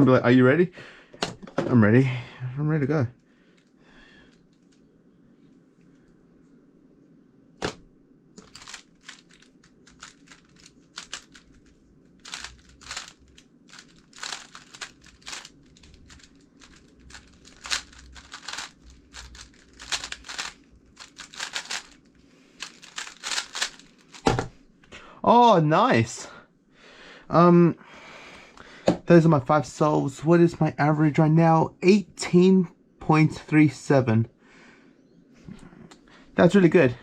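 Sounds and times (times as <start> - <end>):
puzzle cube turning clicks: 8.4 - 24.3.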